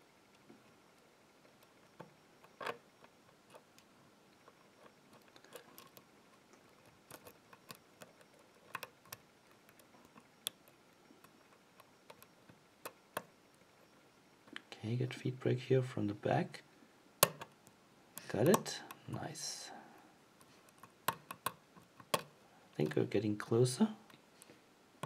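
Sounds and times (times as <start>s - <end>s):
lock pick clicking in lock: 6.8s - 10.6s, 17.2s - 17.6s, 20.7s - 22.3s.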